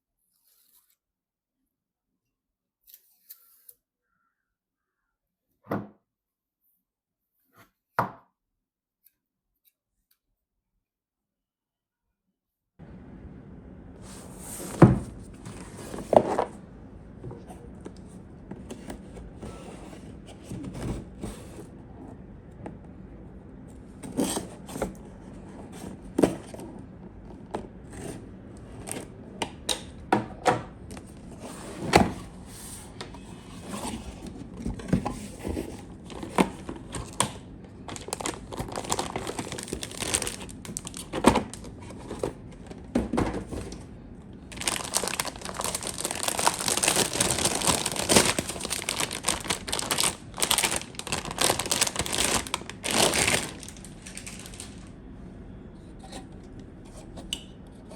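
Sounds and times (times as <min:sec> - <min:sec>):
plastic wrapping crinkling: 0:35.4 - 0:42.8, 0:44.5 - 0:54.9.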